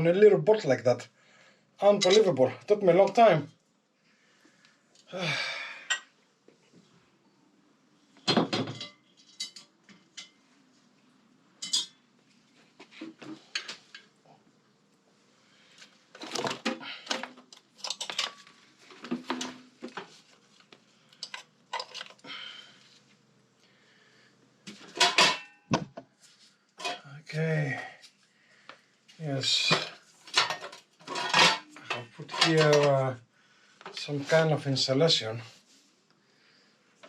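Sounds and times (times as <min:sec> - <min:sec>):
metal tools clinking: 0:11.6 - 0:12.0, 0:17.1 - 0:18.5, 0:24.9 - 0:25.6, 0:29.6 - 0:33.0.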